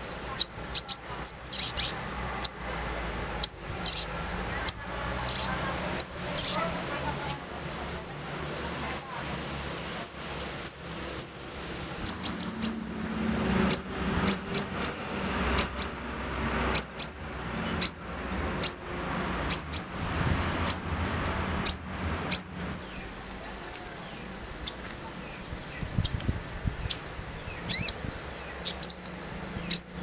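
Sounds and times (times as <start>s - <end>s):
bird giving sharp high chirps: 0.4s - 2.7s, 3.4s - 8.2s, 10.0s - 12.9s, 13.6s - 15.0s, 15.6s - 16.0s, 16.7s - 17.2s, 17.8s - 18.9s, 19.5s - 20.0s, 20.6s - 21.0s, 21.6s - 22.6s, 26.8s - 28.0s, 28.6s - 29.0s, 29.6s - 30.0s.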